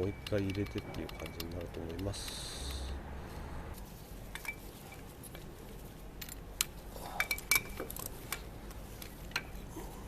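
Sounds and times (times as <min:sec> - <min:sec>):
metal tools clinking: 0:00.0 - 0:02.0, 0:04.3 - 0:08.5.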